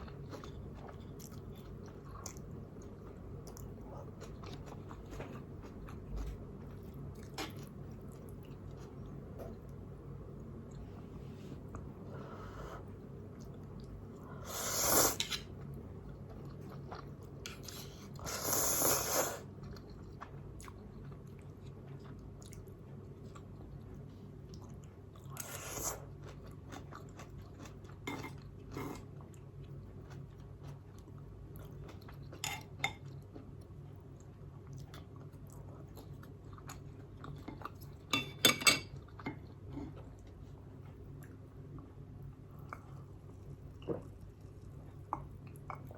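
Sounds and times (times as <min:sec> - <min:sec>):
chewing noodles: 0:00.0 - 0:09.7, 0:19.4 - 0:38.1.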